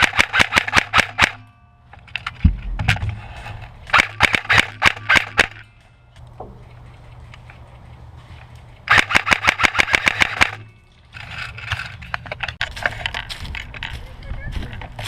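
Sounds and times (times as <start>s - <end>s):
airsoft rifle full-auto burst: 8.9s - 10.6s.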